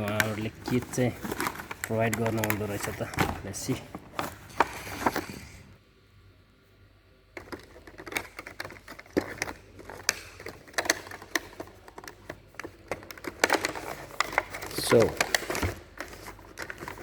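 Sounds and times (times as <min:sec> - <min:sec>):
plastic packaging being handled: 0:00.0 - 0:05.8, 0:07.4 - 0:17.0.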